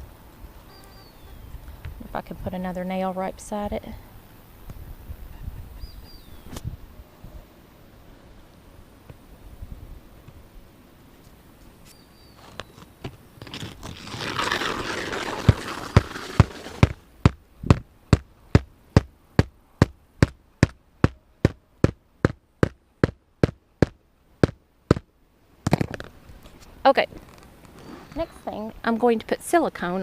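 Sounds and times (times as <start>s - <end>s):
rustling: 11.2s - 17.9s
hammer striking nail into shingles: 16.8s - 25.1s.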